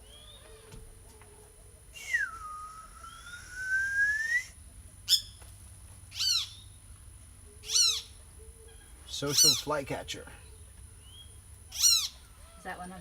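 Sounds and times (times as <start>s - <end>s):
bird whistled note: 2.0s - 4.5s
short sharp bird calls: 6.1s - 6.6s, 7.6s - 8.1s, 11.1s - 12.7s.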